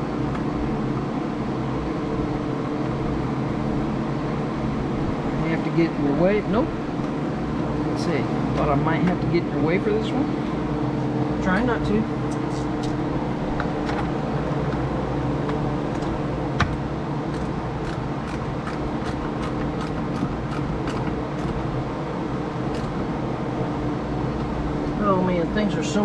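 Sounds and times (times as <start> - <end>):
machine hum: 0.0 - 26.0
clicks and taps of handled parts: 15.5 - 21.6.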